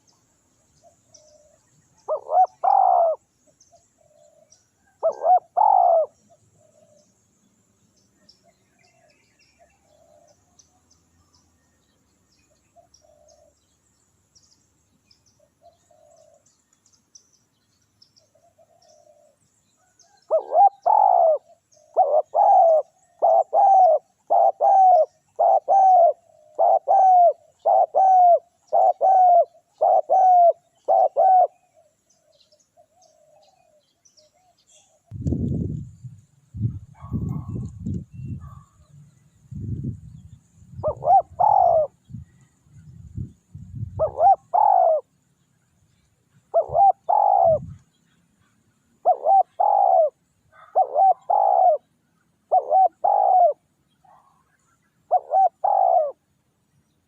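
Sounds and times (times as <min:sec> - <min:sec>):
doves cooing: 0:00.8 - 0:03.3, 0:04.0 - 0:07.1, 0:12.8 - 0:13.6, 0:15.6 - 0:16.5, 0:18.3 - 0:35.2, 0:40.8 - 0:42.6, 0:43.9 - 0:45.2, 0:46.5 - 0:47.9, 0:49.0 - 0:56.2.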